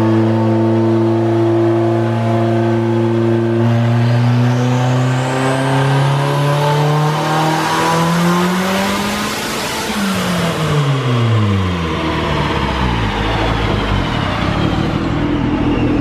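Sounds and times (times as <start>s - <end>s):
turbocharged car engine revving: 0.0s - 16.0s
turbo whistle: 14.3s - 16.0s.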